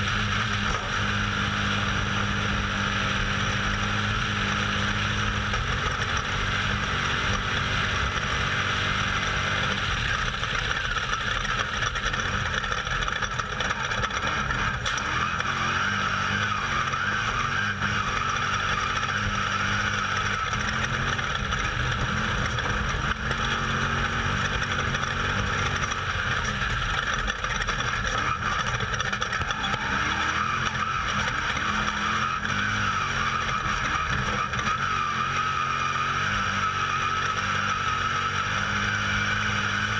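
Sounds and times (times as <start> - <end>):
vehicle engine running: 0.0 - 39.9.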